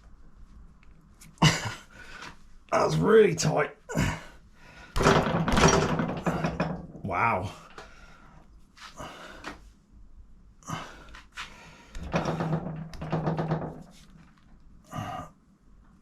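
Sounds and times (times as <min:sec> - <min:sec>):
man grunting and straining: 0:03.9 - 0:04.4, 0:14.9 - 0:15.4.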